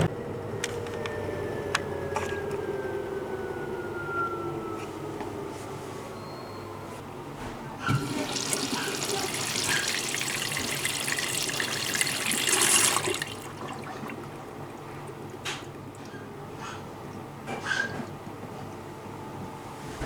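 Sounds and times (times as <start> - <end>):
water rushing into washing machine: 7.8 - 18.4.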